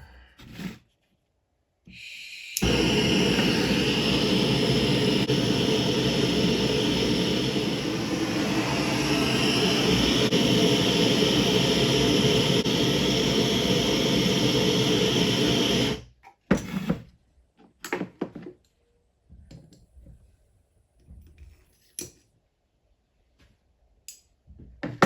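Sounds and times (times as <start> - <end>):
heat gun blowing: 2.0 - 16.0.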